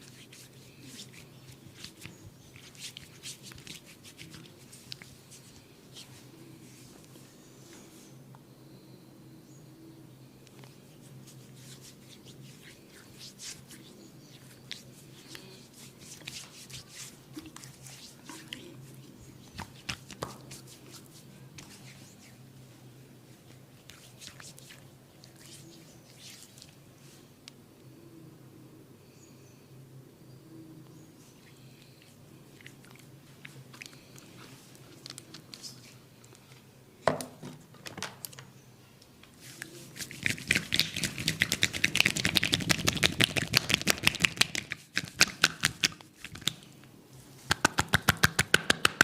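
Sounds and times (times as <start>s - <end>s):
hands rubbing skin and hair: 0.0s - 8.0s, 10.5s - 27.2s, 32.0s - 36.7s, 39.3s - 46.7s, 47.4s - 49.0s
clicks and taps of massage: 19.6s - 20.7s, 40.0s - 46.7s, 47.5s - 49.0s
sharp clicks or slaps: 47.5s - 49.0s.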